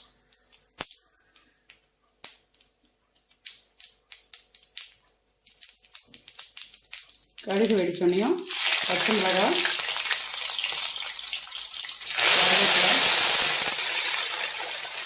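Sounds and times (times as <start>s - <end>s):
mustard seeds popping in hot oil: 0.0s - 15.0s.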